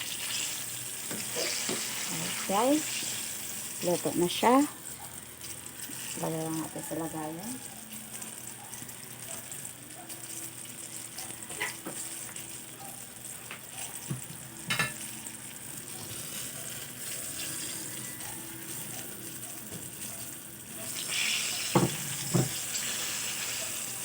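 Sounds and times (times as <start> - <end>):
food sizzling in hot oil: 0.0 - 24.0.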